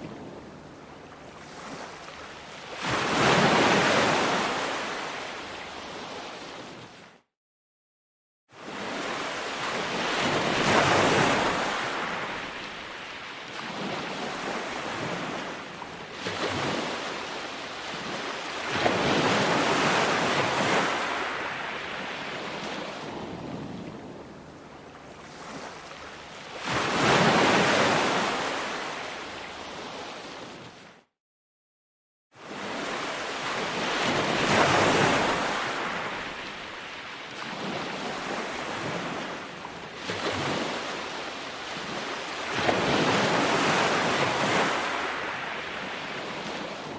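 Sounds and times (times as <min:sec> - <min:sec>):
ocean surf breaking on beach: 0:32.5 - 0:46.9.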